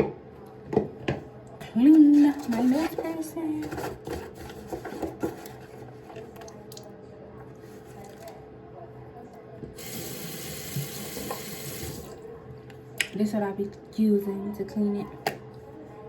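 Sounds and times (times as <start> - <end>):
tap running water: 9.7 - 12.2.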